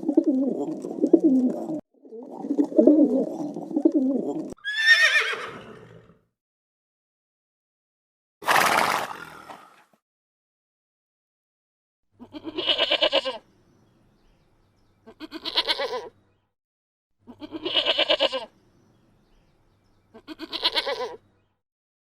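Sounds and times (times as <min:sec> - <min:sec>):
farm animal bleating: 0:12.2 - 0:13.4, 0:15.0 - 0:16.2, 0:17.2 - 0:18.5, 0:20.1 - 0:21.2.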